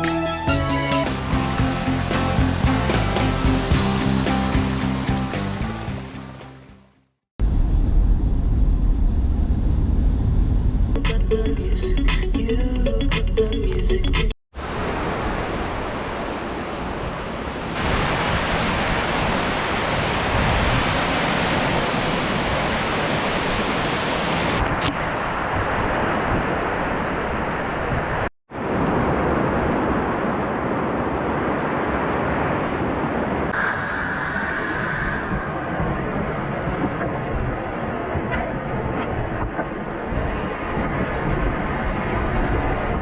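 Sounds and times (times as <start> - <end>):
rushing stream rapids: 1.1 - 6.6, 14.6 - 24.6.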